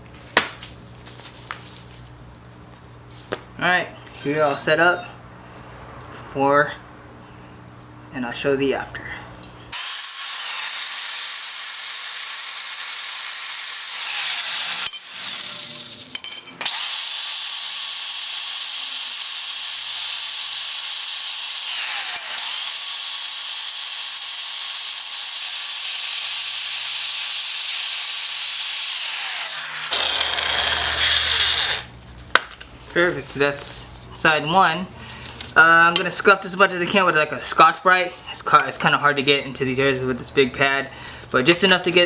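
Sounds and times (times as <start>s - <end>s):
power tool sanding metal: 9.8s - 31.9s.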